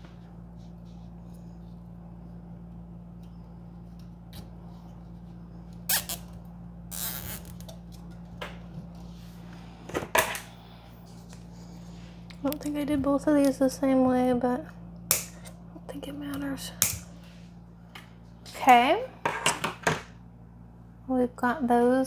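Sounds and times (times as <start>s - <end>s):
steady low hum: 0.0s - 22.0s
zip tie ratcheting: 5.9s - 6.3s, 6.9s - 7.7s
zip tie snips: 5.9s - 6.3s, 6.9s - 7.7s.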